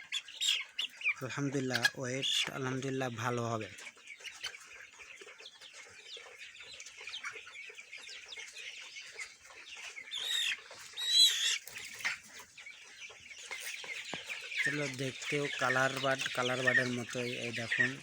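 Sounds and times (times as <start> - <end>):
chickens peeping and clucking: 0.0 - 18.0
chicken squawking calls: 9.2 - 12.4.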